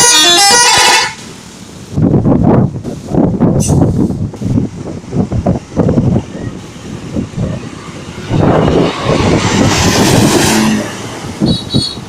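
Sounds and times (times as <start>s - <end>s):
bus passing close by: 3.1s - 12.0s.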